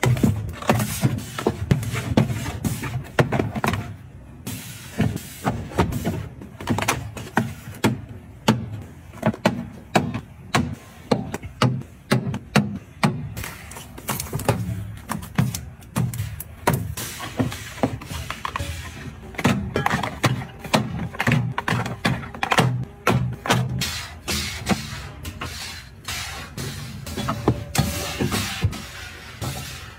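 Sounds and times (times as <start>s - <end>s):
hard items tapping and clicking: 5.0s - 23.8s.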